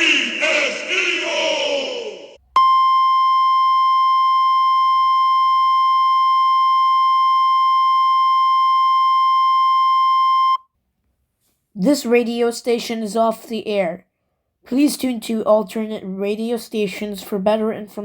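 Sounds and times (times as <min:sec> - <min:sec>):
steady high-pitched tone: 0:02.6 - 0:10.6.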